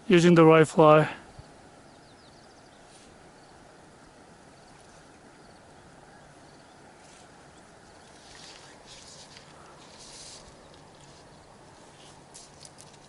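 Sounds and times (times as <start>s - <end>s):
river water flowing: 0.0s - 13.0s
brief rustle: 8.0s - 13.0s.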